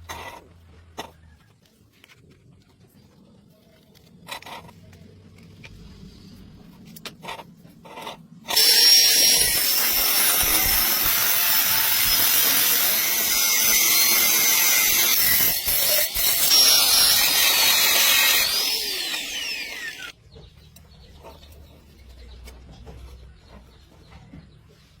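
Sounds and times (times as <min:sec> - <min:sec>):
power tool running: 0:08.5 - 0:20.1.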